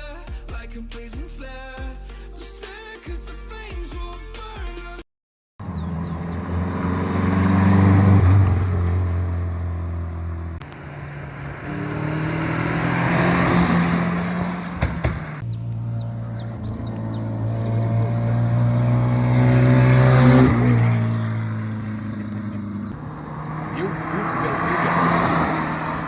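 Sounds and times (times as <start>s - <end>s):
car engines running: 5.6s - 26.0s.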